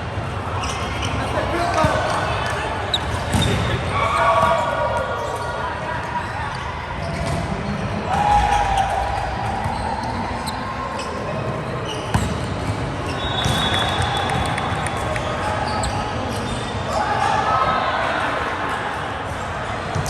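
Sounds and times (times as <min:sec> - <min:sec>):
court background noise: 0:00.0 - 0:20.0
volleyball hits: 0:12.1 - 0:15.7.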